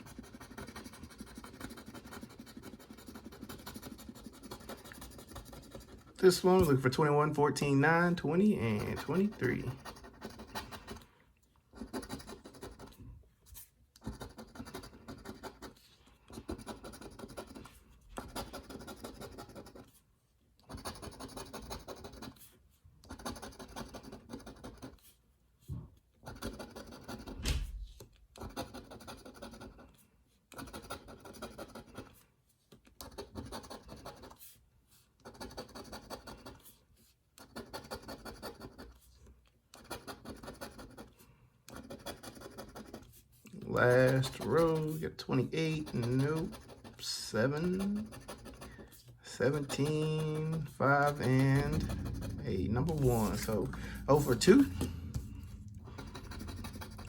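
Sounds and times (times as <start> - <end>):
scraping lottery ticket: 0.0 - 11.1, 11.7 - 20.0, 20.6 - 25.2, 39.8 - 57.0
loud knock: 51.4 - 57.0.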